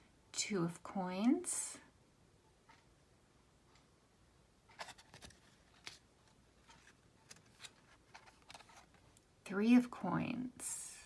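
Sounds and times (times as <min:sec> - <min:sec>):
cards sliding and tapping: 0:04.7 - 0:09.0.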